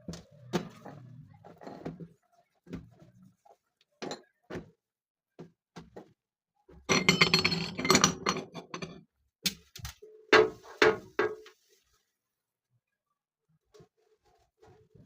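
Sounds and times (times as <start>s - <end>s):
household objects clattering: 6.7s - 9.1s.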